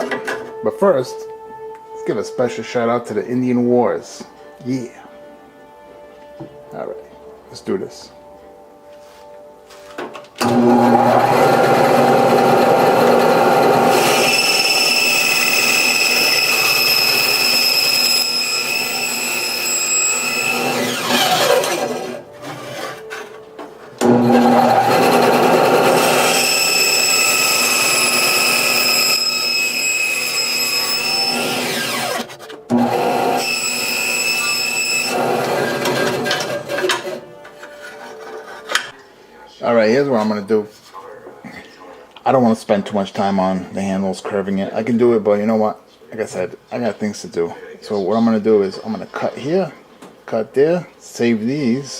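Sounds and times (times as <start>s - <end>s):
power saw whining: 10.4s - 23.3s, 24.0s - 37.3s.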